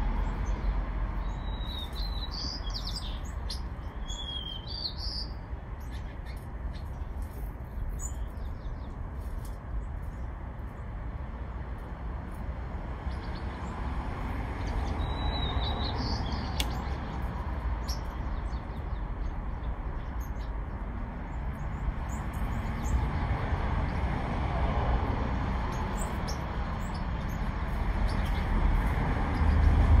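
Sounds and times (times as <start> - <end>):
bird chirps: 1.2 - 7.1, 14.6 - 17.0.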